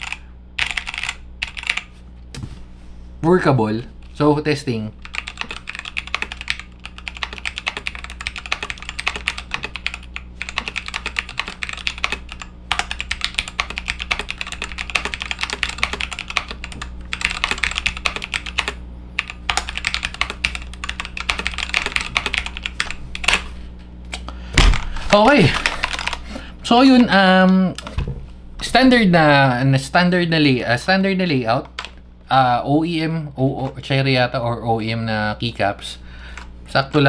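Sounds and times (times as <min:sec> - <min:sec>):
fast typing on mechanical keyboard: 0:00.0 - 0:01.9, 0:05.0 - 0:23.4, 0:25.3 - 0:26.2.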